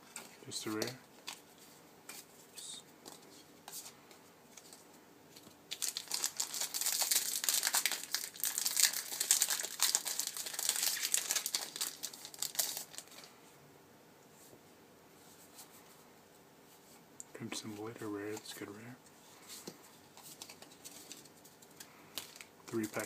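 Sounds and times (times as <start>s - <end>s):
foil wrapper tearing and crinkling: 5.7s - 13.3s.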